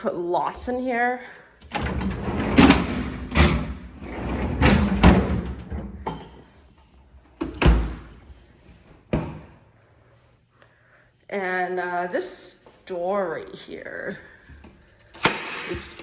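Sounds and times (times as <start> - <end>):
refrigerator doors clunking: 1.6 - 6.4, 7.4 - 8.2.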